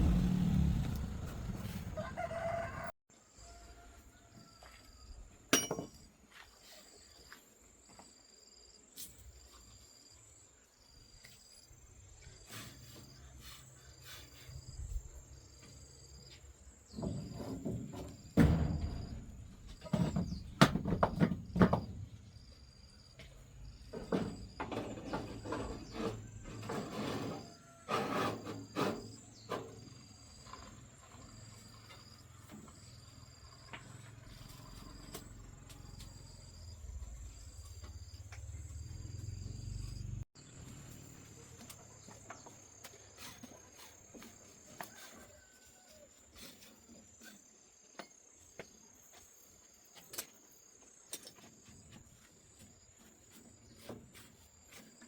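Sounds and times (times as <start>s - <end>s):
low rumble: 0.0s - 2.0s
insects chirping: 5.9s - 45.5s.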